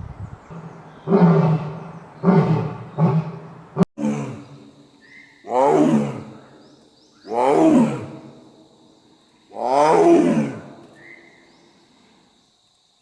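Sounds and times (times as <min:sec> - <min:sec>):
big cat roaring: 0:00.5 - 0:04.6, 0:05.5 - 0:06.4, 0:07.3 - 0:08.3, 0:09.6 - 0:10.8.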